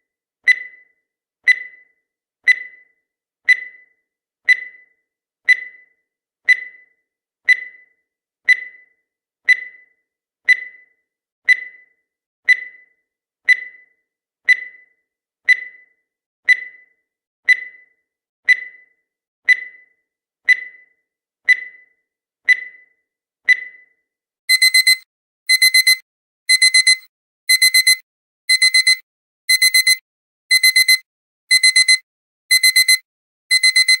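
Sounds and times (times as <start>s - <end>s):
high tick-beeps: 24.5s - 34.0s
rapid electronic alarm beeps: 24.5s - 34.0s.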